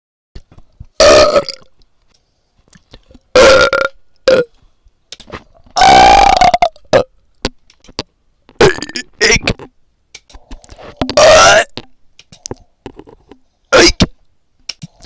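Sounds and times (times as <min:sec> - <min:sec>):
person burping loudly: 0:01.0 - 0:01.7, 0:03.3 - 0:04.5, 0:05.8 - 0:07.2, 0:08.6 - 0:09.5, 0:11.1 - 0:11.9, 0:13.7 - 0:14.1.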